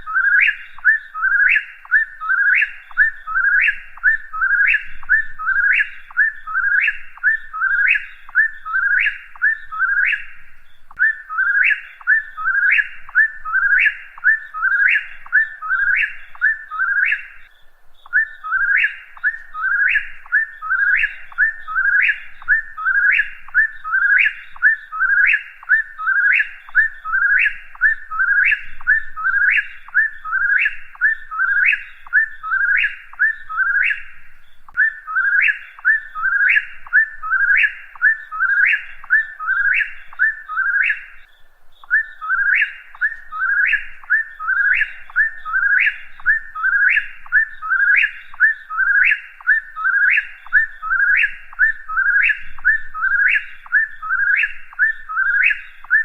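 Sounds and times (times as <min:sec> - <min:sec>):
whip-poor-will whistled song: 0:18.1 - 0:34.1, 0:34.7 - 0:41.2, 0:41.8 - 0:56.0.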